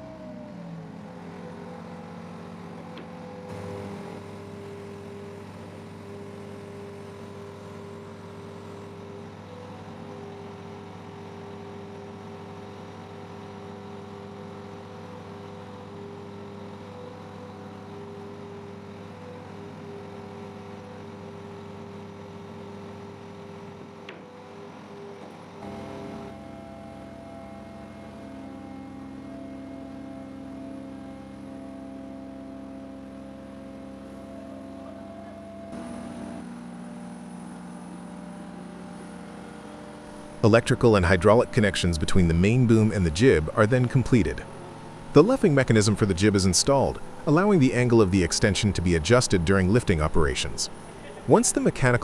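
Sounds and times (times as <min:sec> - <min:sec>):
heavy machine engine droning: 0:00.0 - 0:52.0.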